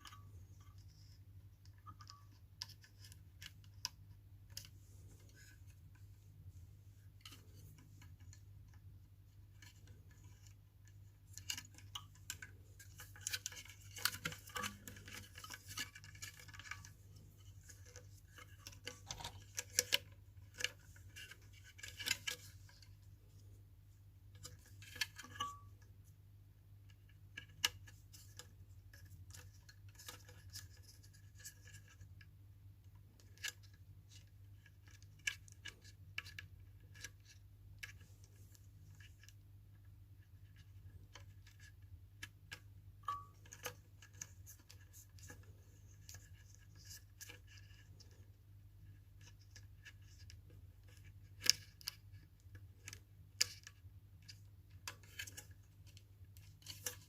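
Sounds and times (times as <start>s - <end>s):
small clicks and taps: 0.0s - 6.1s, 40.3s - 57.0s.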